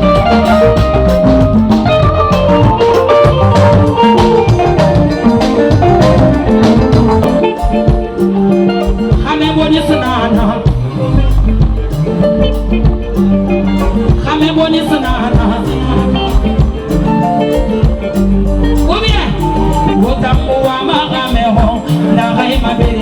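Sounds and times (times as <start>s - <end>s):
upbeat dance music with drums: 0.0s - 9.5s
person singing: 0.0s - 12.4s, 13.6s - 18.0s, 18.6s - 23.0s.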